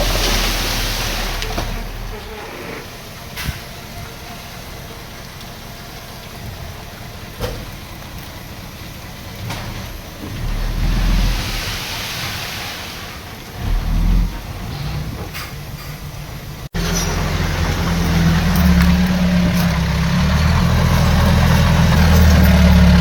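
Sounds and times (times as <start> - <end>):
rushing hiss: 0.0 - 4.6, 9.6 - 16.0
heavy machinery diesel engines: 0.0 - 23.0.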